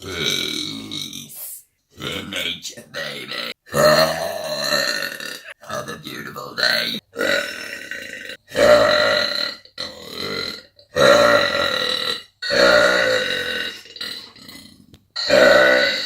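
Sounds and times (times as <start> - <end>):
woman belching: 3.3 - 5.6, 7.2 - 16.0.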